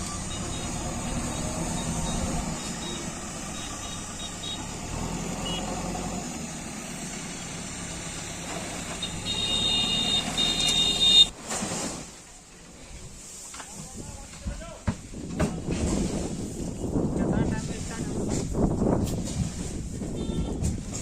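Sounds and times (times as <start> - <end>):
high electronic warning tone: 0.0 - 4.8, 9.0 - 11.3
diesel construction machinery running: 0.0 - 11.3.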